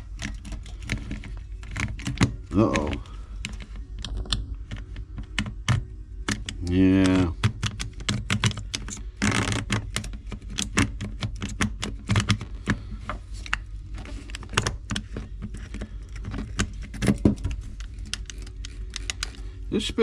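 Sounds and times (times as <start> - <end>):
small metal parts clicking and rattling: 13.4 - 19.6.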